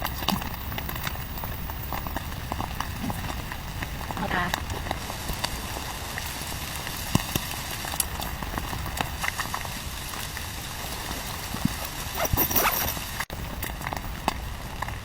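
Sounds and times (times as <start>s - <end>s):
rain hiss: 0.0s - 15.0s
rain taps and knocks on tent: 0.0s - 15.0s.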